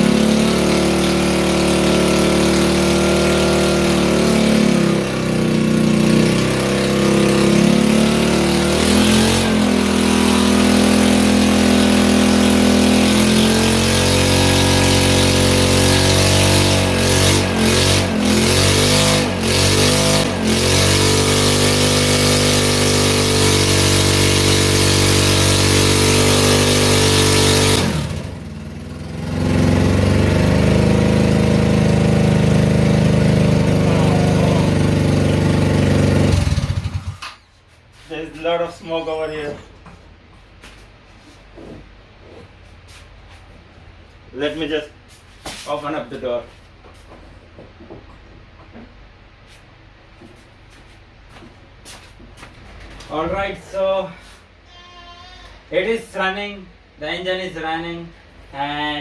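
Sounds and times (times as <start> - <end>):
mini bike engine revving: 0.0 - 37.4.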